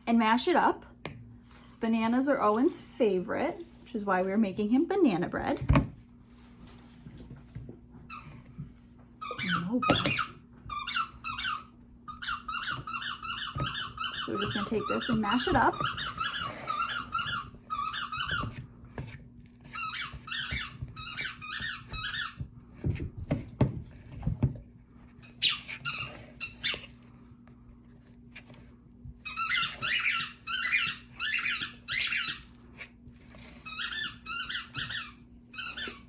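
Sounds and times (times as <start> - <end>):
squeaky toy squeaking: 9.2 - 18.5, 19.7 - 22.4, 25.4 - 26.8, 29.2 - 32.5, 33.6 - 36.0.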